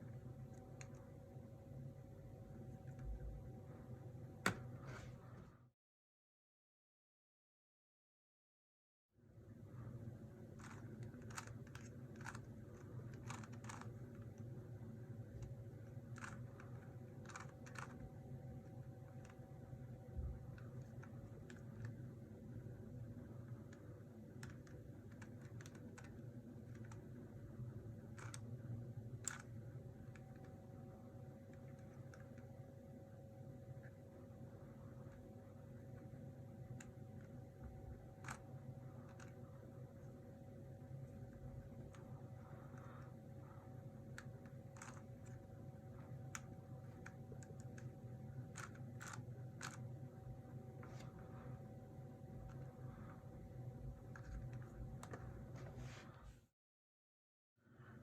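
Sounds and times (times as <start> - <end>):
low steady hum: 0.0 - 5.7, 9.2 - 56.5, 57.6 - 58.0
speed cube clicking: 10.6 - 14.6, 15.3 - 22.1, 23.5 - 27.3, 28.0 - 30.6, 35.9 - 39.5, 43.9 - 50.1.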